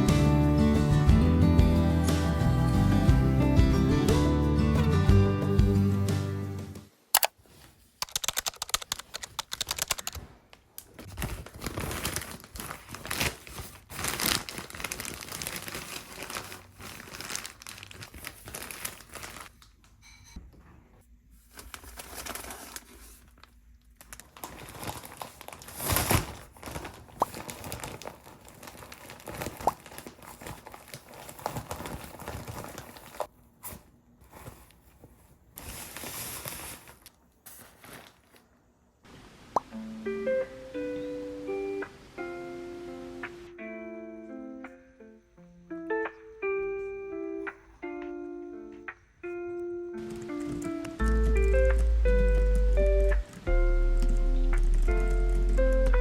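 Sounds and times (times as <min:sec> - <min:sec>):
crinkling and rustling: 0:07.2 - 0:38.8, 0:50.0 - 0:56.0
sharp clicks and taps: 0:08.0 - 0:10.2.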